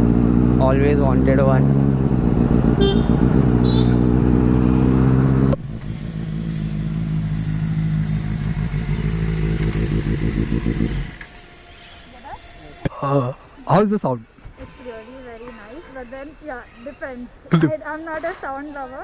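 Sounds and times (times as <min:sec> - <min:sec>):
motorcycle engine running: 0:00.0 - 0:11.8.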